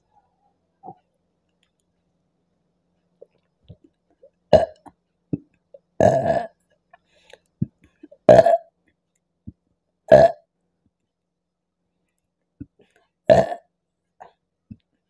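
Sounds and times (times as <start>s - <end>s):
woman burping: 4.5s - 4.9s, 6.0s - 6.6s, 8.2s - 8.7s, 10.1s - 10.4s, 13.3s - 13.7s.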